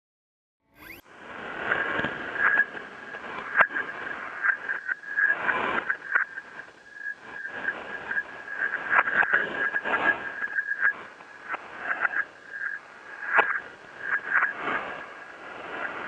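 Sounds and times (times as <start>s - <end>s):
thin whistle: 0.7s - 1.0s
radio static hiss and crackle: 0.8s - 16.0s.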